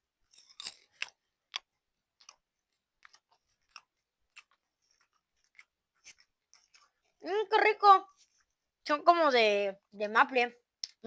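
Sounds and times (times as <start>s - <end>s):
person chewing popcorn: 0.2s - 6.9s.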